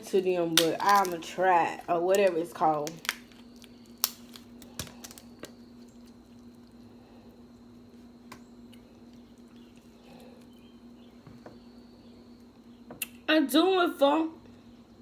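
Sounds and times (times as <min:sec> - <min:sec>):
steady low hum: 0:00.0 - 0:15.0
crab shell clicking and breaking: 0:00.5 - 0:06.7
wet squishing and chewing: 0:00.6 - 0:08.0, 0:08.6 - 0:10.7.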